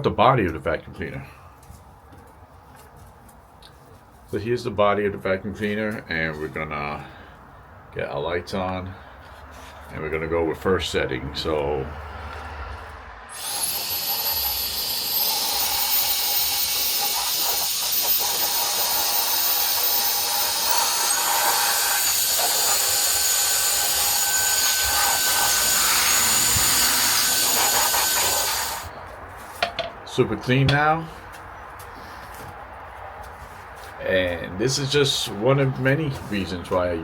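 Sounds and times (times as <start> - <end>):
air duster motor whine: 13.3 - 23.2, 23.8 - 28.9.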